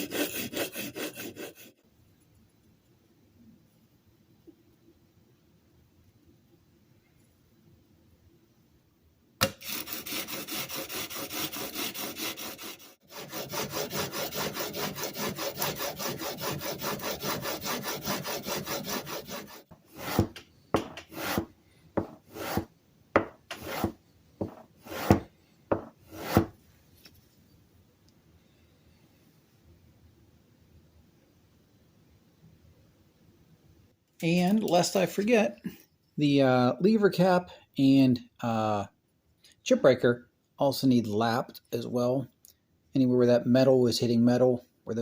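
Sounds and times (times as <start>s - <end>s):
plane iron scraping on sandpaper: 0.0s - 1.8s, 9.4s - 20.4s, 21.1s - 22.7s, 23.5s - 26.5s.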